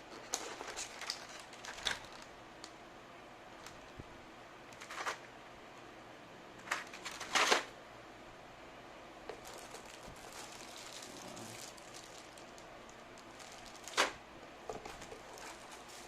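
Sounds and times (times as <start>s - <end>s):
packaging crackling: 0.1s - 2.7s, 6.6s - 7.7s, 9.3s - 16.0s.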